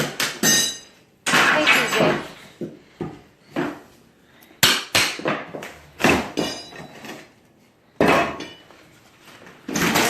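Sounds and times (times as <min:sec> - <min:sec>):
demolition knocks and bangs: 0:01.3 - 0:02.4.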